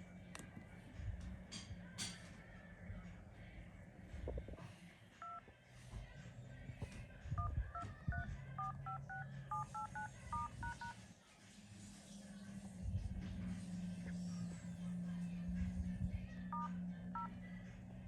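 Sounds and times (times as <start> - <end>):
phone keypad touch tones: 7.4 - 10.9, 16.6 - 17.3.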